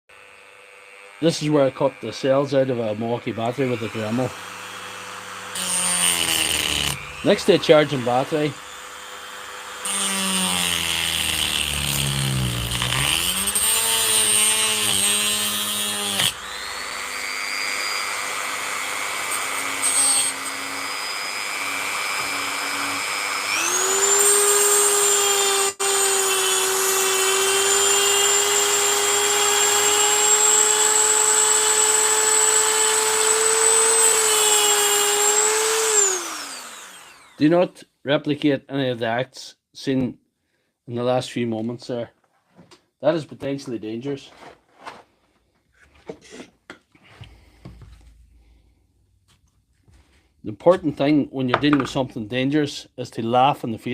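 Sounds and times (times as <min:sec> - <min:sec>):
rotary tool motor whine: 0:03.5 - 0:37.4.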